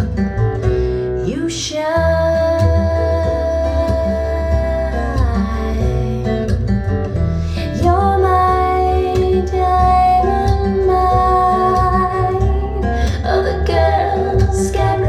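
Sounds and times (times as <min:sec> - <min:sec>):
bass line: 0:00.0 - 0:15.0
guitar: 0:00.0 - 0:15.0
woman singing long notes: 0:01.3 - 0:06.2, 0:07.6 - 0:15.0
pop song over loudspeakers: 0:07.5 - 0:15.0.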